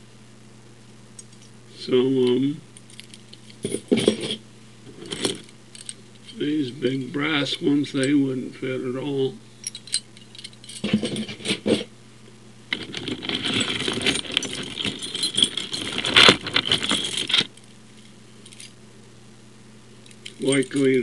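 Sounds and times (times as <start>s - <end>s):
metal keys jangling: 2.8s - 4.2s, 5.0s - 6.4s, 9.6s - 11.5s, 12.8s - 17.6s, 18.4s - 18.8s, 20.0s - 21.0s.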